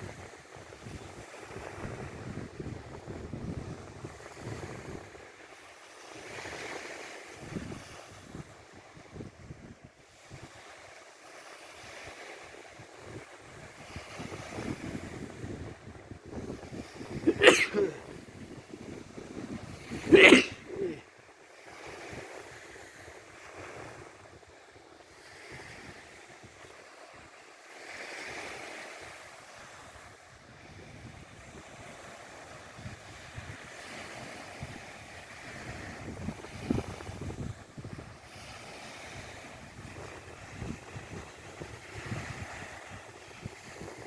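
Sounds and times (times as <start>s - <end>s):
waves washing on shore: 0.0s - 44.0s
person sneezing: 17.2s - 18.1s, 19.9s - 21.0s.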